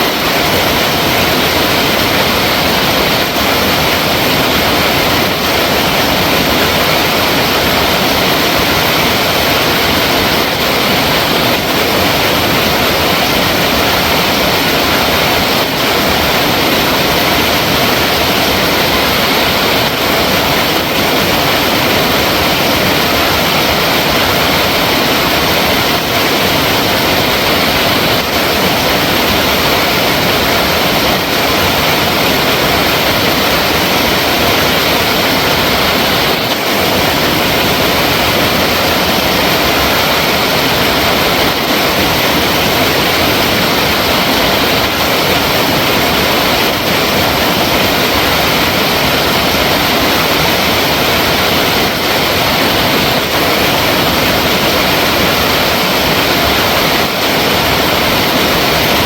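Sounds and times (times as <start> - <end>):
water rushing: 0.0 - 59.0.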